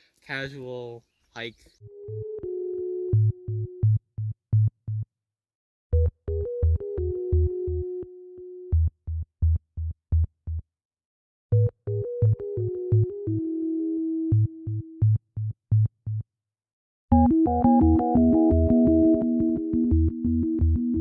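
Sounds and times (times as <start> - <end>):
electronic music with synthesizer: 1.8 - 4.0, 6.0 - 8.9, 11.6 - 14.8, 17.1 - 21.0.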